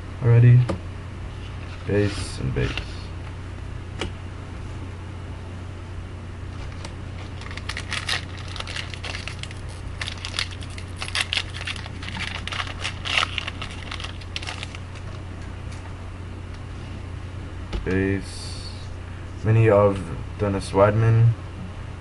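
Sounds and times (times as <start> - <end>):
low hum: 0.0 - 22.0
wrapper crinkling: 6.6 - 15.2.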